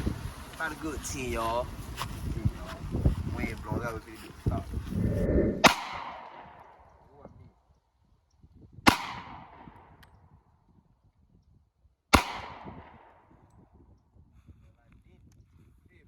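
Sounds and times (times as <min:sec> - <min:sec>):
rifle shots echoing: 0:05.6 - 0:06.7, 0:08.9 - 0:10.0, 0:12.1 - 0:13.4.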